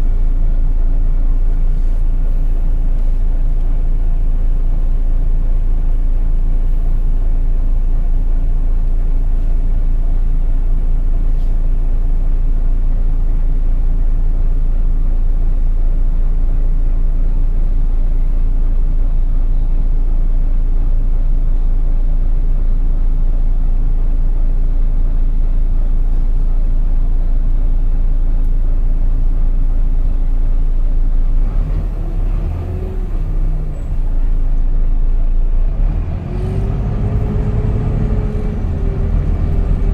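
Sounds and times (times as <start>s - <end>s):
bus engine droning: 0.0s - 39.9s
drivetrain whine: 27.1s - 39.9s.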